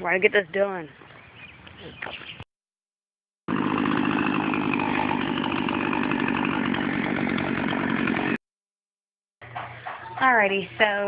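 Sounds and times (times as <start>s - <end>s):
chainsaw running: 3.5s - 8.4s.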